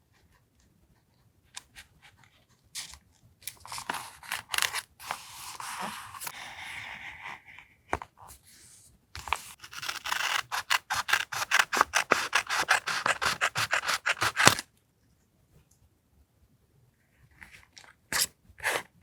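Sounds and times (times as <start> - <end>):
strokes scratching on paper: 9.2 - 14.6.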